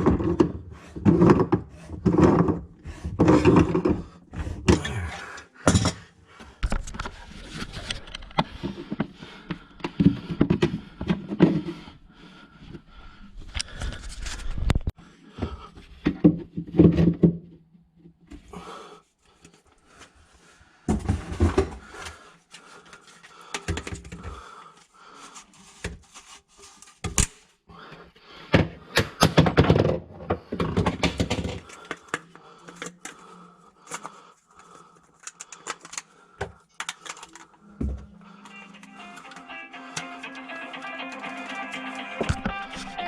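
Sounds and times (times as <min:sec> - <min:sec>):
drain parts clicking and scraping: 0:29.8 - 0:40.0.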